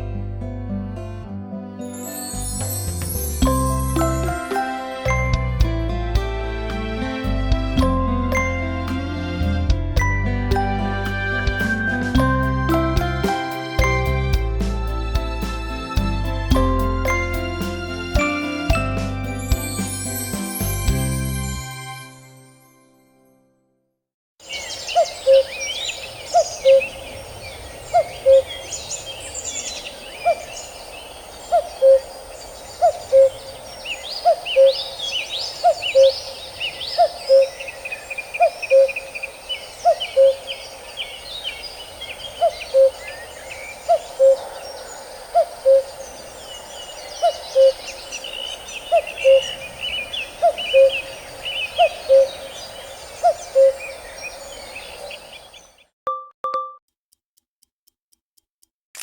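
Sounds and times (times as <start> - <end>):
birds chirping and trilling: 24.4 - 55.9
two-note birdsong ringtone call: 48.9 - 49.6.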